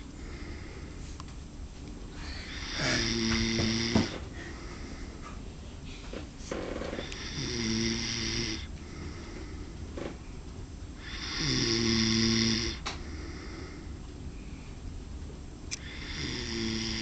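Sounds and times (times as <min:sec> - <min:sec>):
man snoring: 0:02.4 - 0:04.2, 0:06.9 - 0:09.3, 0:11.0 - 0:13.8, 0:15.8 - 0:17.0.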